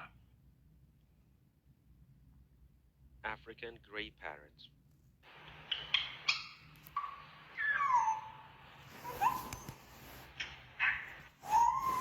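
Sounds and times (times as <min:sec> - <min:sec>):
parrot squawking and whistling: 0:05.7 - 0:12.0.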